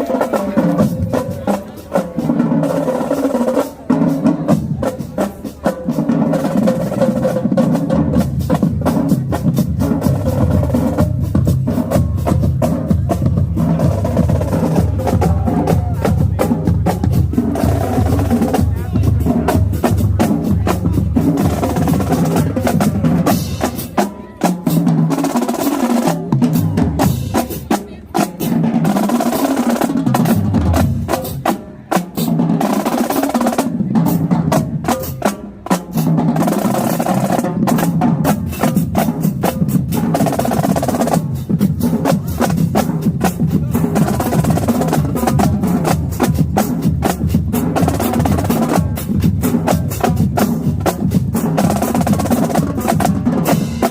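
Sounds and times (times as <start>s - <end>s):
snare drum strokes and rolls: 0.0s - 53.9s
bass drums: 6.3s - 24.0s, 37.1s - 53.9s.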